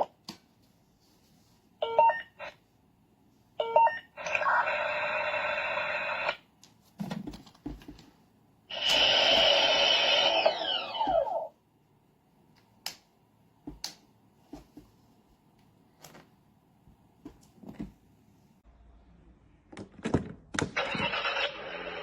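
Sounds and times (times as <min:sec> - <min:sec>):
toy electronic sound effects: 0:08.7 - 0:11.5.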